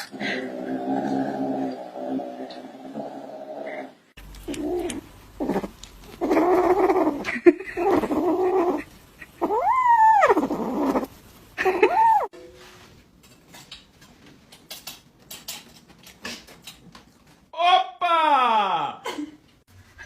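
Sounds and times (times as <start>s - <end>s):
cat growling: 3.0s - 12.3s
cat meows and yowls: 9.4s - 10.4s, 11.8s - 12.3s.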